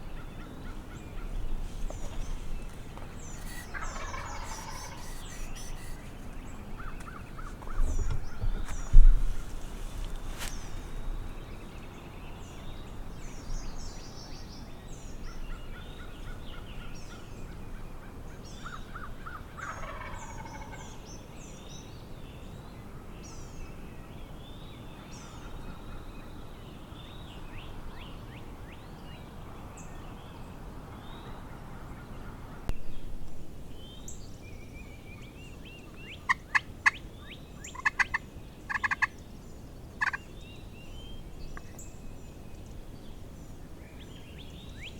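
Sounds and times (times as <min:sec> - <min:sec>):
songbirds chirping: 0:00.0 - 0:16.0
turkey gobbling: 0:03.4 - 0:06.0
turkey yelps: 0:03.4 - 0:06.0.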